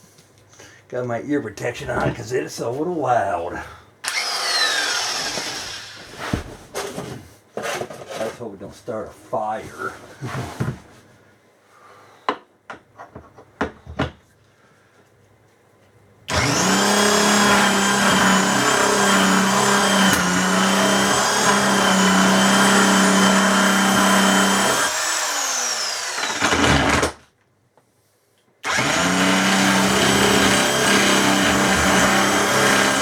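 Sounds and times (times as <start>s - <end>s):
electric impact wrench running: 4.0s - 6.1s, 16.3s - 27.2s, 28.6s - 33.0s.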